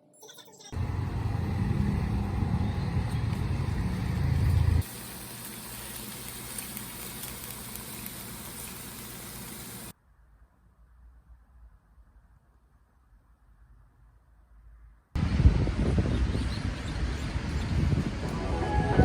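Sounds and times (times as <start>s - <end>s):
low rumble: 0.8s - 4.8s
even hiss: 4.0s - 9.9s.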